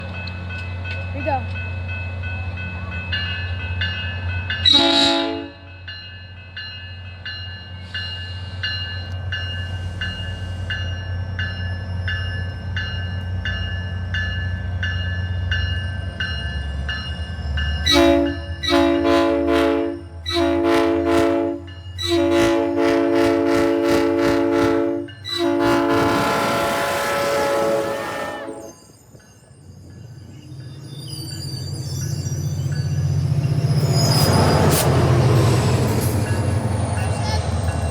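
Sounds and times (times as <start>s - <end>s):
locomotive bell ringing: 0.0s - 24.0s, 24.8s - 37.9s
diesel locomotive engine rumble: 0.0s - 37.9s
train air horn blasts: 4.7s - 5.7s, 17.9s - 28.8s.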